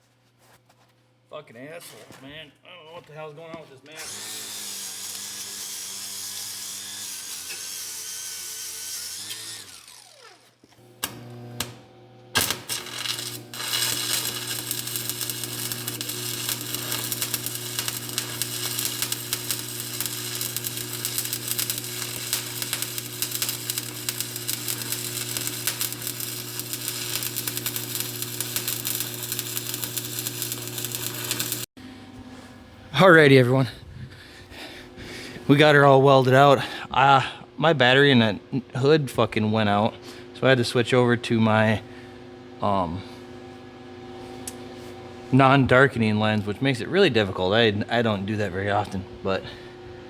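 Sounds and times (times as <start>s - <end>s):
angle grinder grinding steel: 4.0s - 11.8s, 12.4s - 31.7s.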